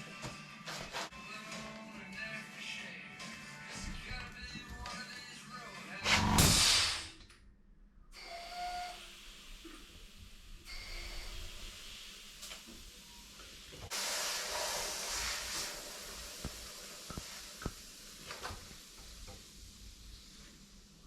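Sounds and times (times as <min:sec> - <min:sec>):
air hissing from tire: 0:06.0 - 0:07.2, 0:08.2 - 0:13.0, 0:13.8 - 0:20.7.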